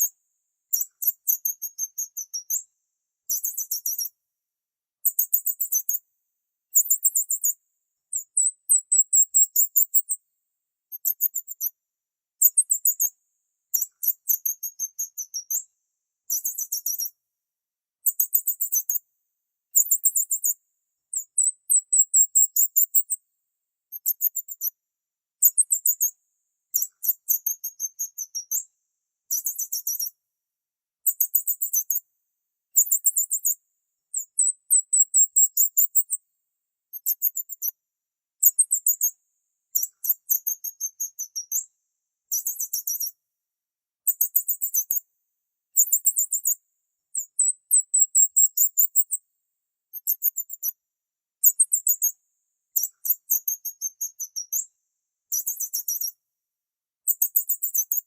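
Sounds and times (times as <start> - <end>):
small birds chirping: 0.0 - 4.2, 5.0 - 6.0, 6.7 - 10.2, 10.9 - 11.8, 12.4 - 15.7, 16.3 - 17.2, 18.0 - 19.0, 19.7 - 23.2, 23.9 - 24.8, 25.4 - 28.7, 29.3 - 30.2, 31.0 - 32.0, 32.7 - 36.2, 36.9 - 37.8, 38.4 - 41.7, 42.3 - 43.2, 44.0 - 45.0, 45.7 - 49.2, 49.9 - 50.8, 51.4 - 54.7, 55.3 - 56.2, 57.0 - 58.0.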